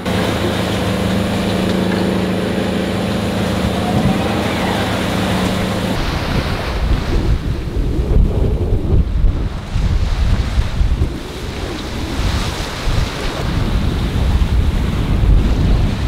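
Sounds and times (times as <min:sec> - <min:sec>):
steady mechanical hum: 0:00.0 - 0:06.3
waves rushing past boat: 0:00.0 - 0:16.0
wind buffeting microphone: 0:00.0 - 0:16.0.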